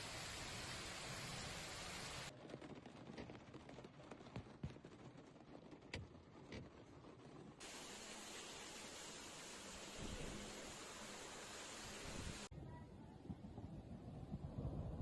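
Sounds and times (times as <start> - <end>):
heavy rain and rushing water: 0.0 - 2.7, 7.2 - 12.5.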